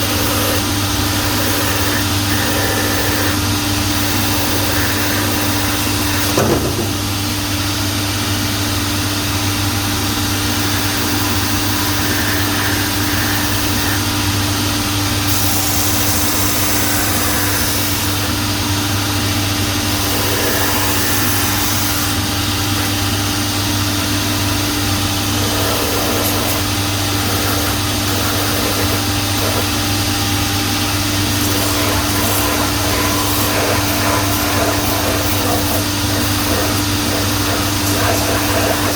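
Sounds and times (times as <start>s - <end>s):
abrasive wheel sanding: 0.0s - 6.4s, 19.8s - 22.2s, 25.2s - 30.2s, 31.0s - 38.9s
motor and dust extraction hum: 0.0s - 38.9s.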